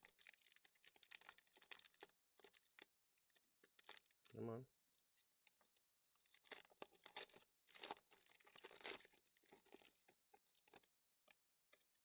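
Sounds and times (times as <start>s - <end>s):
foil wrapper crinkling and tearing: 0.0s - 4.2s, 6.2s - 10.9s.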